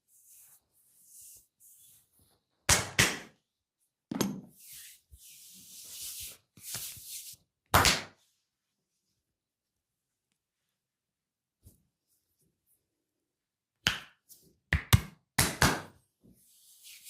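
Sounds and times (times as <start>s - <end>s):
hands slapping body: 2.7s - 3.3s, 7.7s - 8.2s, 13.8s - 16.0s
hands rubbing skin: 4.6s - 7.4s.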